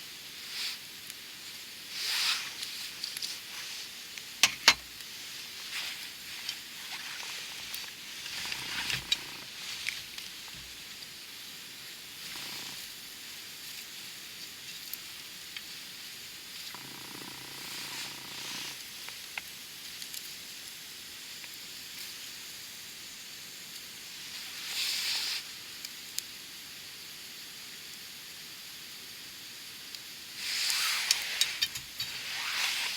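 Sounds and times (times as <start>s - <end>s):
campfire crackling and popping: 2.4s - 11.3s, 17.5s - 20.8s.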